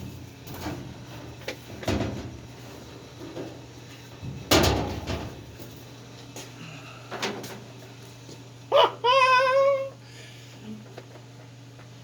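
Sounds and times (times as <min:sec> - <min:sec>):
parts knocking and clunking: 0:00.0 - 0:03.6, 0:04.2 - 0:05.8
steady low hum: 0:00.0 - 0:12.0.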